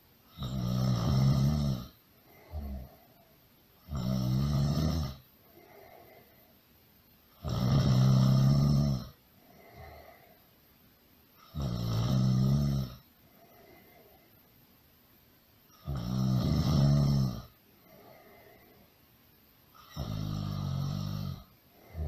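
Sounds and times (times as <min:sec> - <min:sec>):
person snoring loudly: 0:00.3 - 0:03.0, 0:03.8 - 0:05.2, 0:07.4 - 0:10.2, 0:11.4 - 0:13.0, 0:15.8 - 0:18.3, 0:19.8 - 0:22.0
soft breath: 0:02.1 - 0:03.6, 0:05.3 - 0:06.9, 0:09.3 - 0:10.7, 0:13.0 - 0:14.7, 0:17.5 - 0:19.2, 0:21.0 - 0:22.0.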